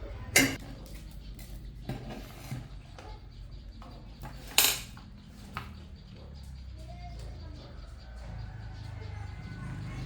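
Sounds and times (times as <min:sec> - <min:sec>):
metal objects clinking: 0:04.2 - 0:05.2.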